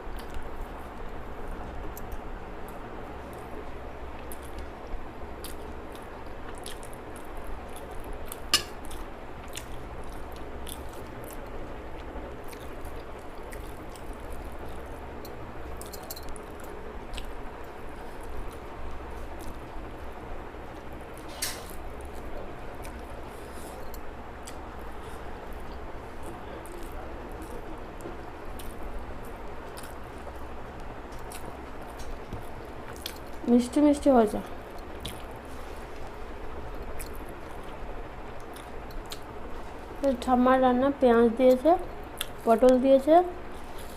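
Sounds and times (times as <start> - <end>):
steady background hum: 0.0 - 43.9
person chewing: 5.4 - 19.6, 28.6 - 30.5, 32.9 - 33.4, 34.8 - 35.3, 36.7 - 37.8, 38.4 - 39.3, 42.2 - 42.5.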